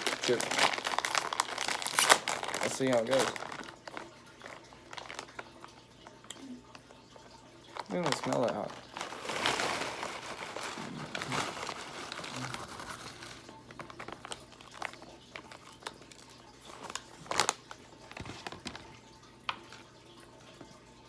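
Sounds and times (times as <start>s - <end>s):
chip bag crinkling: 0.0s - 19.0s.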